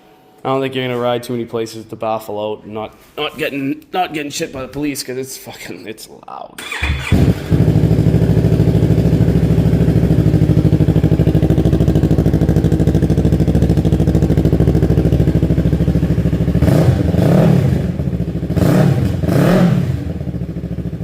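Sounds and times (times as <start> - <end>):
motorcycle engine idling and revving: 6.7 - 21.0.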